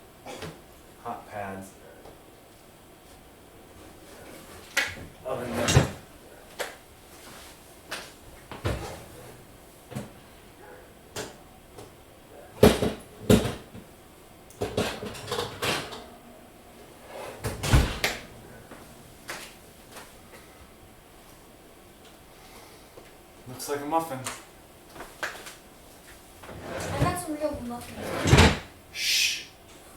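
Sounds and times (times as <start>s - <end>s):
oven door opening: 17.0s - 19.0s, 27.9s - 28.7s.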